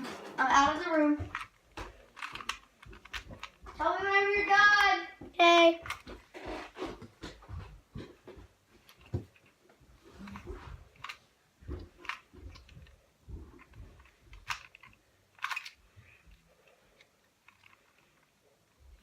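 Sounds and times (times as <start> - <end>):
puzzle cube layers clicking: 1.3 - 3.6, 12.0 - 15.9.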